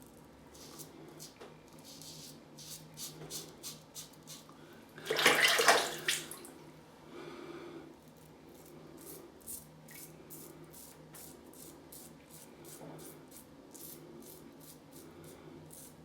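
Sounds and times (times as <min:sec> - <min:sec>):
running tap water: 0:05.0 - 0:06.5.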